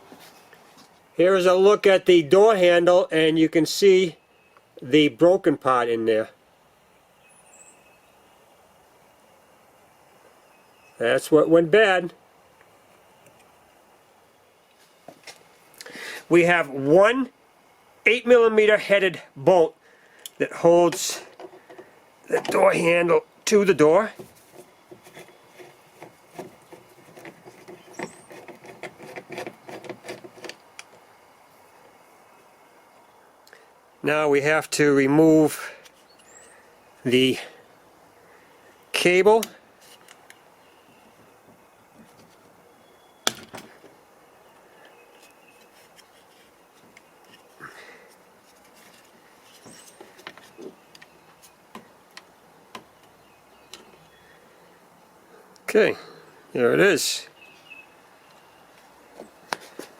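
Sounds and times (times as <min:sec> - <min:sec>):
plastic and metal parts clicking: 0:25.0 - 0:30.9.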